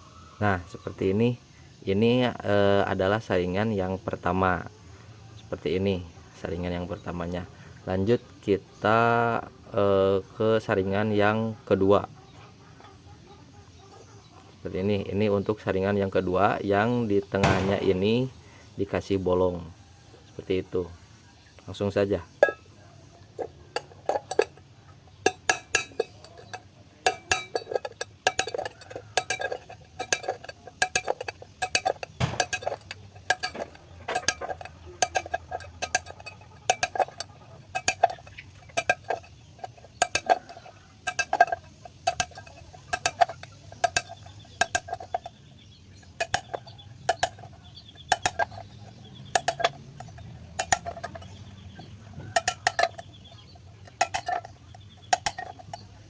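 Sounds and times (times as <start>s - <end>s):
tool knocking on tin can: 17.4s - 18.3s, 25.3s - 45.3s, 46.0s - 55.9s.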